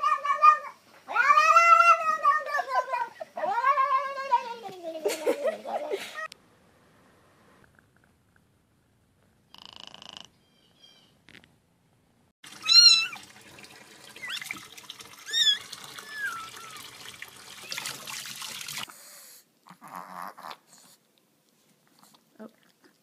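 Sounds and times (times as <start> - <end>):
cat meowing: 12.6 - 13.2.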